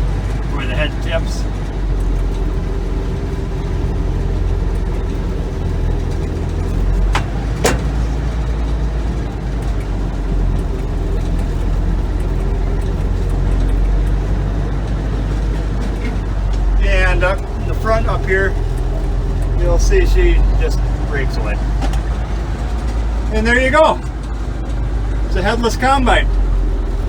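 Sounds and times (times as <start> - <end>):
combine engine droning: 0.0 - 27.0.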